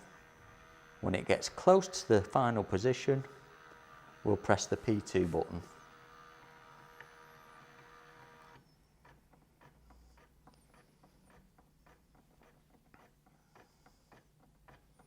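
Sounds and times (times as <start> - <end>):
faint irregular ticks: 9.0 - 15.0.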